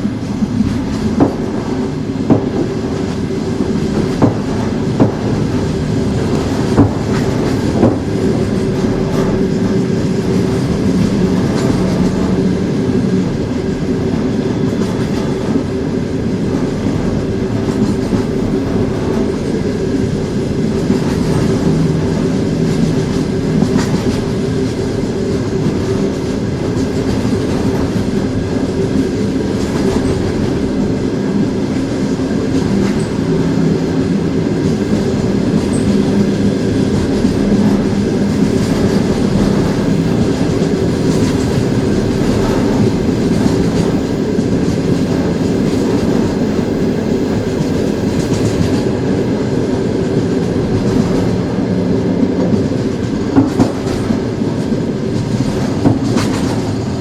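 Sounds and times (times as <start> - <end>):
train rumbling: 0.0 - 57.0
wheels clacking over rail joints: 31.8 - 49.2.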